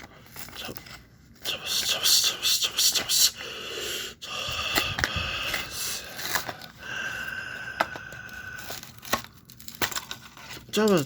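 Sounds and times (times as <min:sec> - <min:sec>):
cardboard and plastic rustling: 0:00.0 - 0:01.4, 0:04.5 - 0:07.0, 0:07.8 - 0:11.0.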